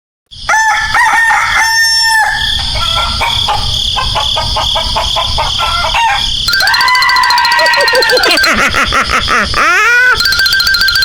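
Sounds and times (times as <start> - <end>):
rooster crowing: 0.5 - 8.6.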